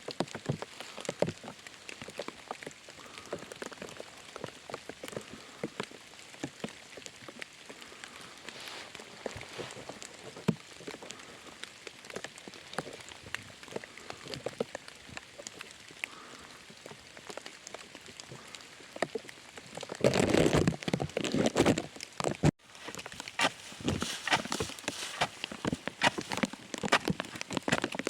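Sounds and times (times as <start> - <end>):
rain drops falling: 0.0 - 28.0
rustling crunching noise: 6.6 - 11.2, 19.8 - 28.0.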